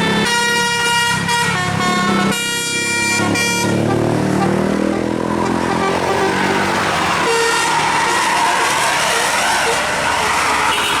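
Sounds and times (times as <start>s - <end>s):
bus passing by: 0.0s - 11.0s
musical air horn tune: 0.1s - 8.6s.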